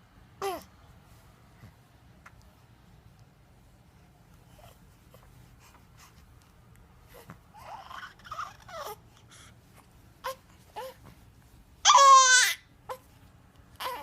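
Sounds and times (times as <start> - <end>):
baby whimpering: 0.4 - 0.7, 7.1 - 9.2, 13.8 - 14.0
baby crying: 7.6 - 9.0, 11.8 - 13.0, 13.8 - 14.0.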